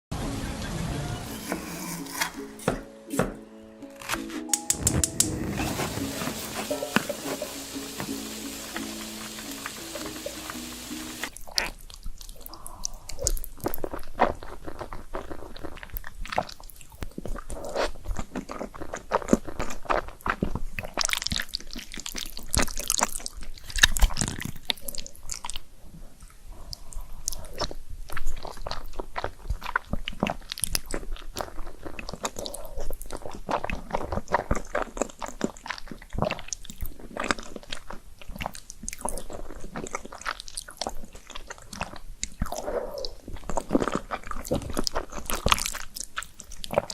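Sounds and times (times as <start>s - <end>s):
person chewing crunchy food: 3.9s - 46.9s.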